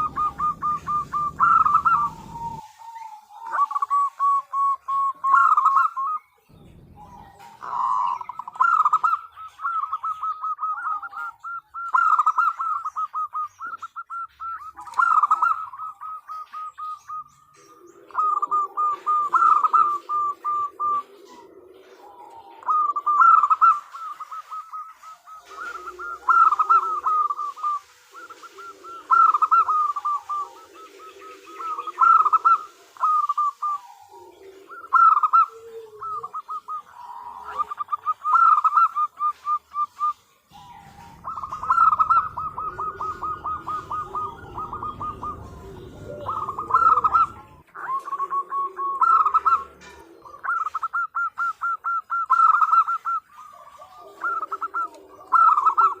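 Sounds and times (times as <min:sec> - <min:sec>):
low rumble: 0:00.0 - 0:02.7, 0:06.4 - 0:08.9, 0:40.5 - 0:47.7
dove cooing: 0:00.0 - 0:56.0.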